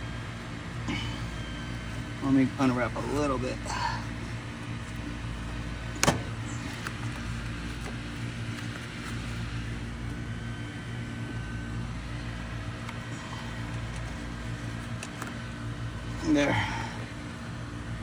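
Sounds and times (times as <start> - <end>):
motor humming: 0.0 - 18.0
sharp snap: 6.0 - 6.3.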